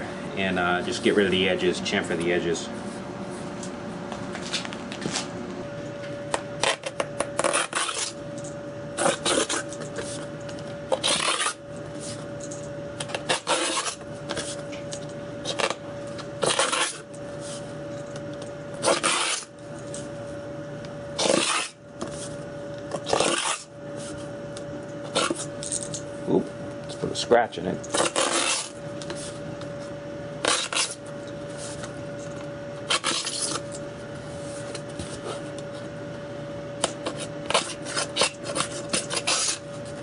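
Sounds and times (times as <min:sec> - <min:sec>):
deburring tool scraping acrylic: 0:10.9 - 0:12.2, 0:13.1 - 0:14.6, 0:16.4 - 0:17.1, 0:18.8 - 0:19.5, 0:27.9 - 0:29.3, 0:32.9 - 0:33.7, 0:36.9 - 0:39.7.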